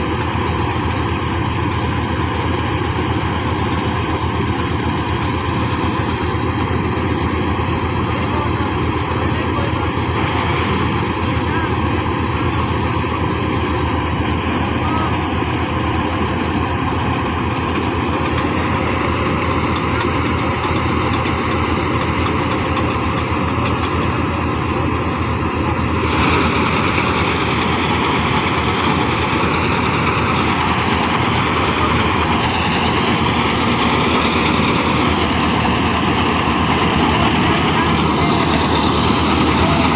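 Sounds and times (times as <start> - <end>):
combine harvester engine running: 0.0 - 39.9.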